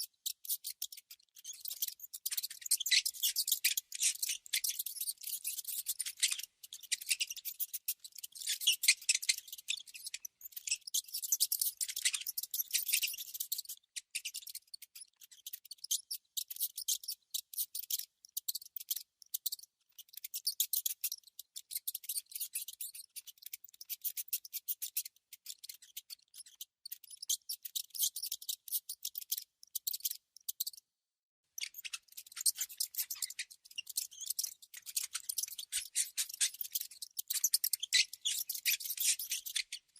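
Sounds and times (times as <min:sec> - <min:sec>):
mouse scratching and gnawing: 0:31.6 - 0:39.8.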